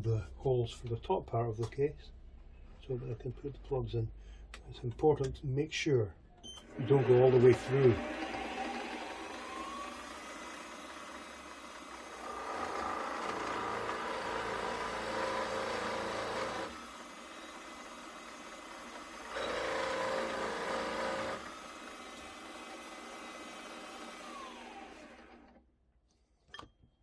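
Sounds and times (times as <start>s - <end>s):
drill bit cutting into wood: 6.7s - 18.4s, 19.0s - 25.4s
electric drill running: 6.7s - 25.5s.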